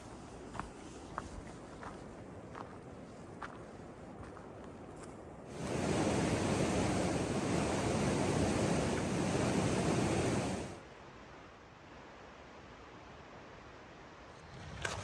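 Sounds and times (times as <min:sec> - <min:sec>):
quiet water hiss: 0:05.4 - 0:15.0
mountain stream rushing: 0:05.5 - 0:10.8.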